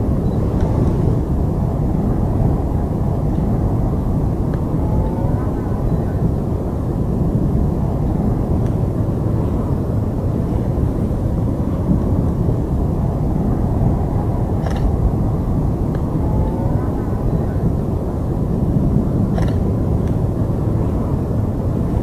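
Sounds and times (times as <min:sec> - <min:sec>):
loud low rumbling: 0:00.0 - 0:22.0.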